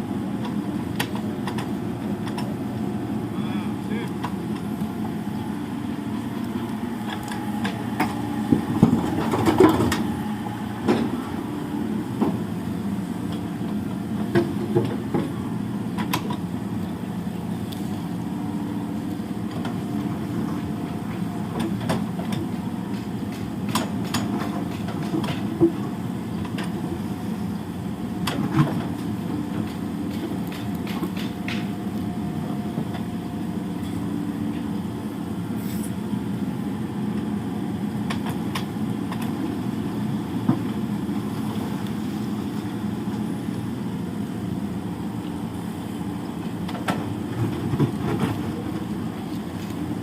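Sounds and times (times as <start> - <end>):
excavator diesel engine running: 0.0 - 50.0.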